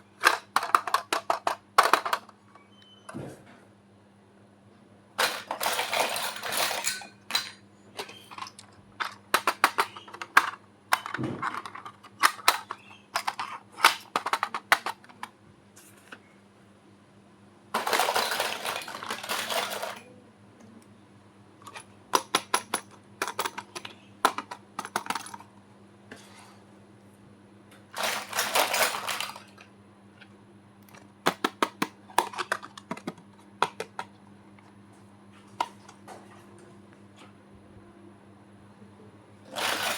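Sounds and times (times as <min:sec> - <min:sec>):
plastic toy pieces clattering: 0:00.2 - 0:02.3, 0:05.2 - 0:15.3, 0:17.7 - 0:20.1, 0:21.6 - 0:25.5, 0:27.9 - 0:29.7, 0:30.9 - 0:34.1, 0:39.5 - 0:39.9.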